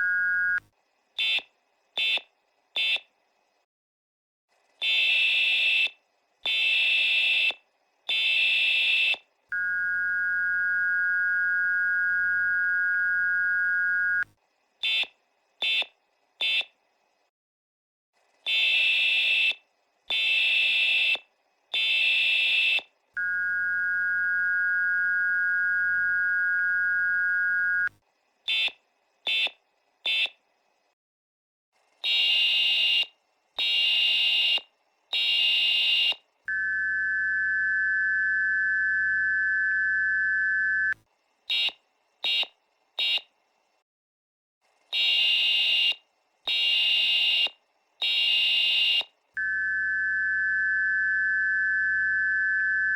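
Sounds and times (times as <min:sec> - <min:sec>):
screeching data bursts: 0:36.5 - 0:41.0, 0:49.4 - 0:52.9
two-tone attention signal: 0:36.5 - 0:41.0, 0:49.4 - 0:52.9.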